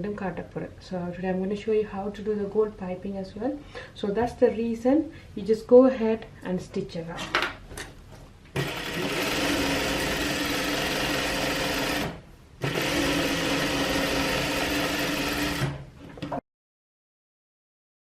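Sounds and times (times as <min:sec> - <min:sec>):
sewing machine stitching: 0:08.6 - 0:15.9.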